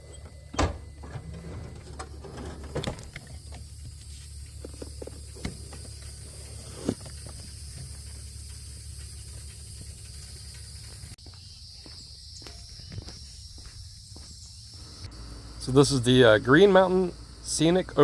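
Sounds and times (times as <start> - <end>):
high-pitched insect buzz: 3.0 - 16.0.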